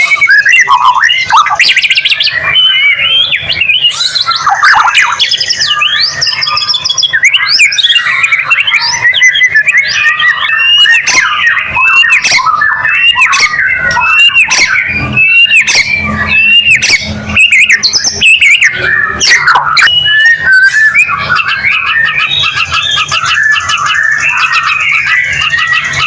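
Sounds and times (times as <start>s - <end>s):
bird singing varied whistles: 0.0s - 26.0s.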